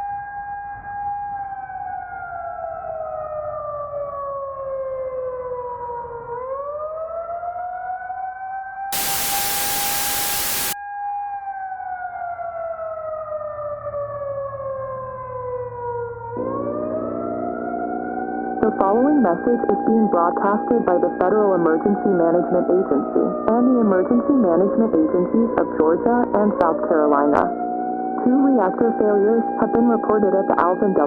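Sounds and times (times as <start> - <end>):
loud static burst: 9.0 - 10.8
siren wailing: 9.0 - 10.8.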